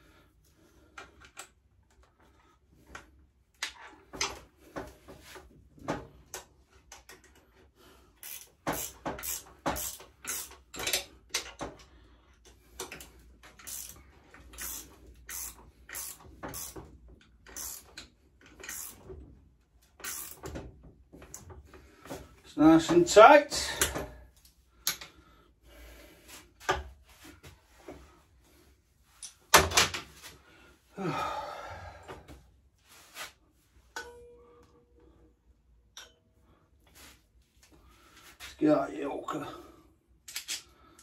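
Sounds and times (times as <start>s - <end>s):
ratchet spanner clicking: 8.2s - 11.5s, 12.9s - 16.8s, 17.4s - 19.0s, 20.0s - 20.5s.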